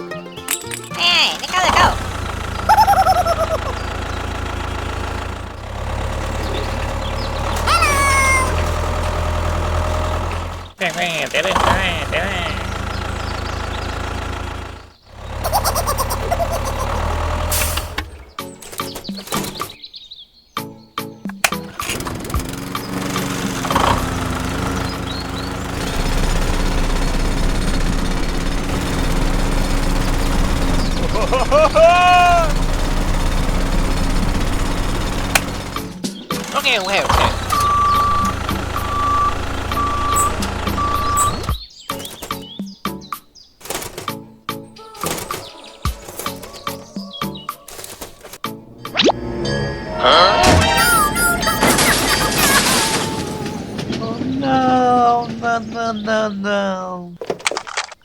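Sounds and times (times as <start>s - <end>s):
small motor droning: 1.4s - 19.6s, 21.5s - 42.3s
loud high tone: 49.1s - 53.8s.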